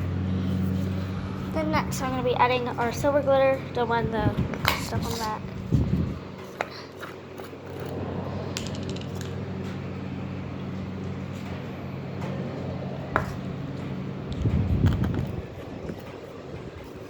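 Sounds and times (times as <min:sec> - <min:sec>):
low mechanical hum: 0:00.0 - 0:17.0
low rumble: 0:07.6 - 0:16.9.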